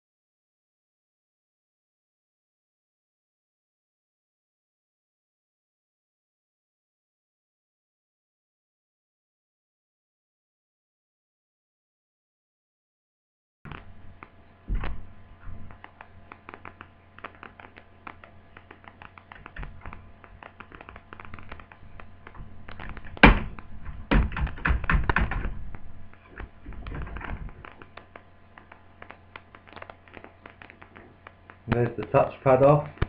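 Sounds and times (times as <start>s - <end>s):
plastic laptop casing clicks: 15.7s - 31.6s.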